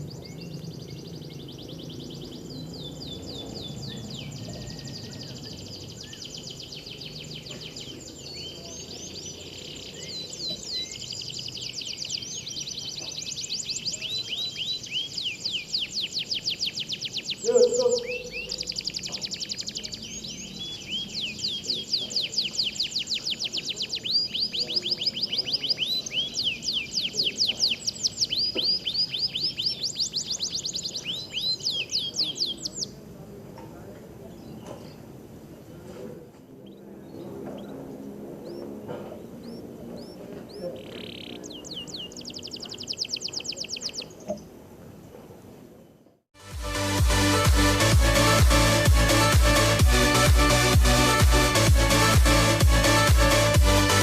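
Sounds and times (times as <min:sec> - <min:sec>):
canary song trills: 0:00.0 - 0:33.1, 0:36.6 - 0:45.1.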